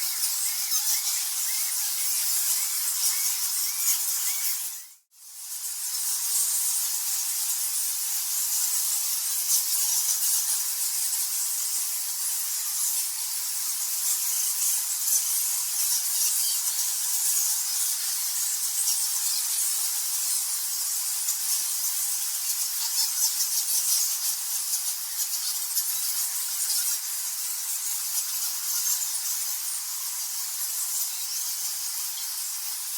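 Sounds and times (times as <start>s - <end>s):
bats chittering: 0.0s - 5.0s.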